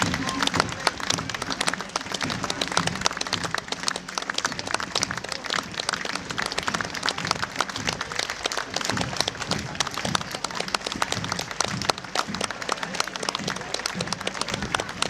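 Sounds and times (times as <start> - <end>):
crowd applauding: 0.0 - 15.0.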